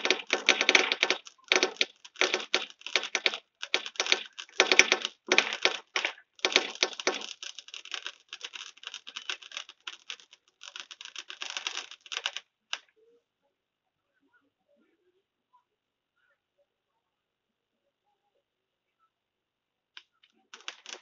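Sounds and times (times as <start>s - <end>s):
fireworks crackling: 0.0s - 12.4s, 20.5s - 21.0s.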